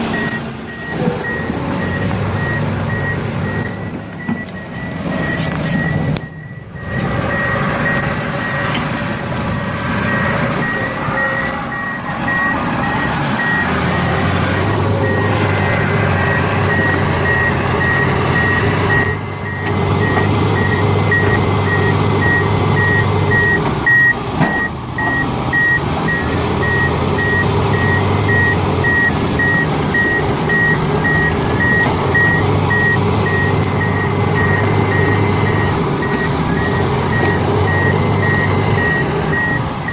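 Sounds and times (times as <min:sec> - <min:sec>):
reversing alarm beeping: 0:00.1 - 0:08.8, 0:10.0 - 0:39.9.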